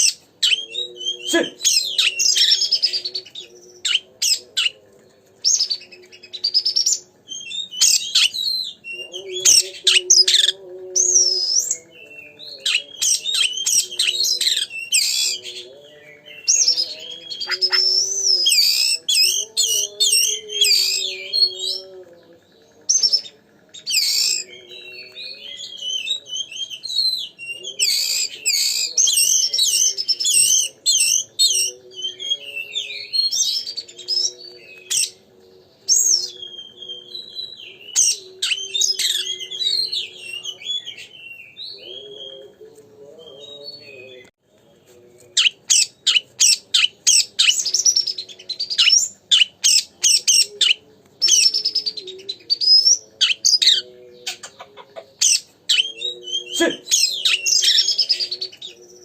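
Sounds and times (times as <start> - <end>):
songbird singing: 0.0 - 59.0.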